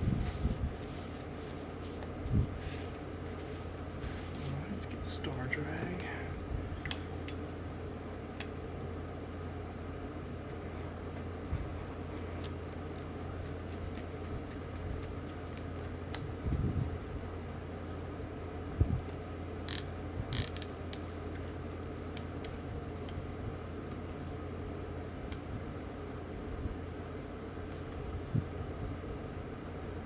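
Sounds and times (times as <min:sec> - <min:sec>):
fishing reel clicks: 0:19.7 - 0:20.7.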